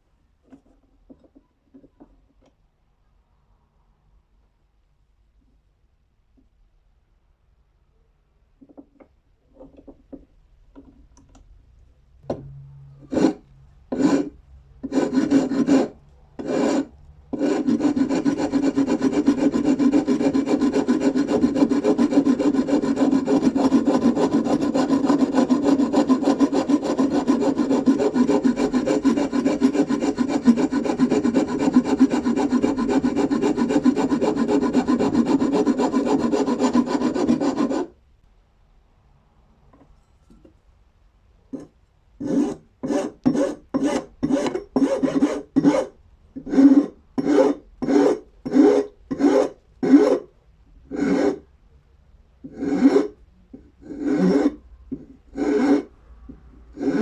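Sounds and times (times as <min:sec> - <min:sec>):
abrasive rubbing on metal: 0:12.4 - 0:15.9.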